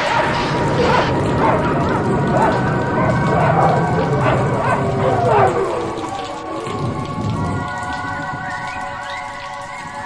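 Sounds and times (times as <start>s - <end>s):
low thunder rumble: 0.0s - 9.8s
steady rain: 0.0s - 10.0s.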